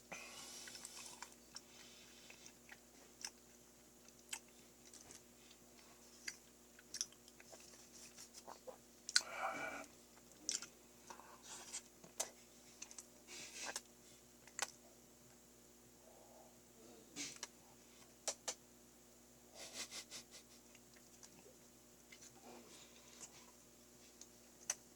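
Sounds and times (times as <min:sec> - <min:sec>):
wet mouth chewing sounds: 0:00.6 - 0:09.3.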